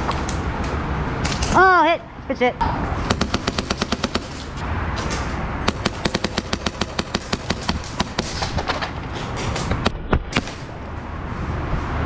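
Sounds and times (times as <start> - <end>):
airsoft guns firing bursts: 3.0 - 4.6, 5.7 - 9.0.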